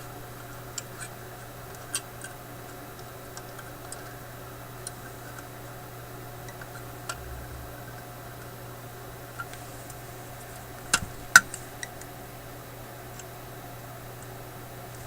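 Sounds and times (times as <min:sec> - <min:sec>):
steady low hum: 0:07.1 - 0:08.7.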